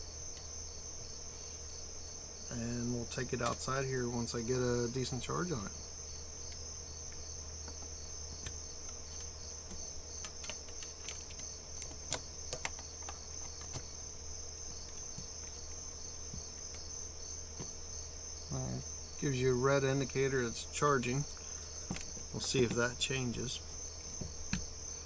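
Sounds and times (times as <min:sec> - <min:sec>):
crickets chirping: 0:00.0 - 0:25.0
light clicks and taps: 0:03.4 - 0:03.7.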